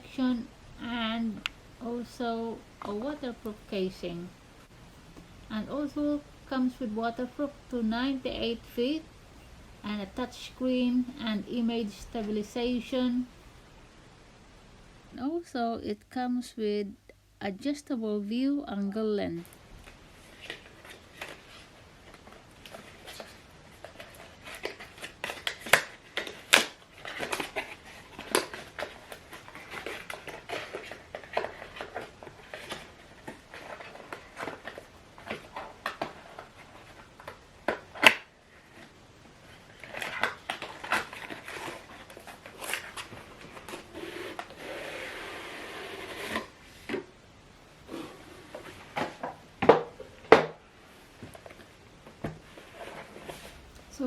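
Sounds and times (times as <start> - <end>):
cardboard and plastic rustling: 19.5 - 47.2, 47.8 - 54.0.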